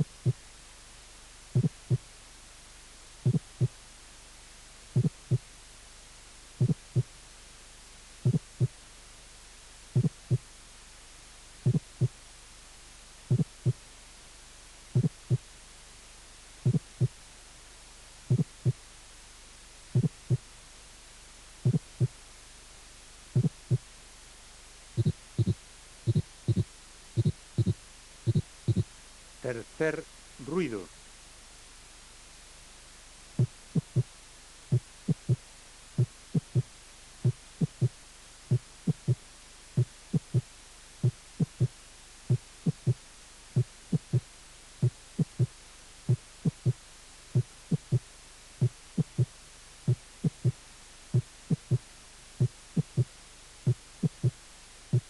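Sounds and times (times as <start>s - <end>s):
heartbeat low thuds: 0.0s - 0.4s, 1.5s - 2.1s, 3.2s - 3.8s, 4.9s - 5.5s, 6.6s - 7.2s, 8.2s - 8.8s, 9.9s - 10.5s, 11.6s - 12.2s, 13.2s - 13.8s, 14.9s - 15.5s, 16.6s - 17.2s, 18.3s - 18.9s, 19.9s - 20.5s, 21.6s - 22.2s, 23.3s - 23.9s, 24.9s - 28.9s, 33.4s - 55.0s
steady low hum: 0.0s - 55.0s.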